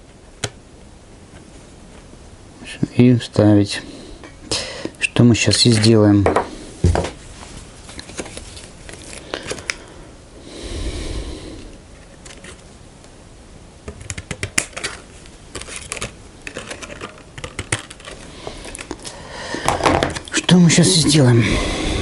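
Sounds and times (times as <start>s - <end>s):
plastic film crinkling: 7.4s - 9.7s, 14.6s - 20.5s.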